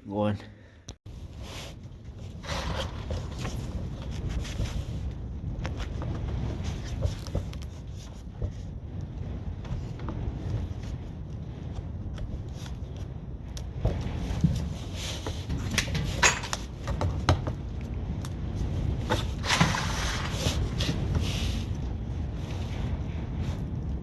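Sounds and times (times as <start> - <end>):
low rumble: 1.1 - 24.0
hand tools scraping and knocking: 2.3 - 4.9, 14.4 - 17.6, 19.0 - 21.6.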